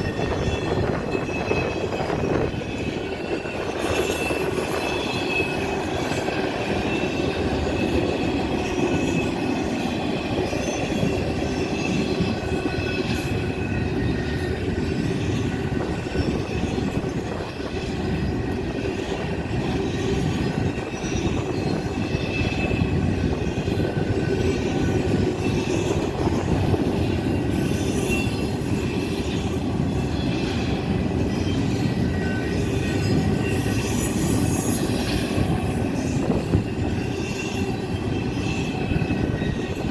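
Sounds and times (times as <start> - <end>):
freight train wheels rumbling: 0.0 - 39.9
wheel squeal: 19.9 - 39.9.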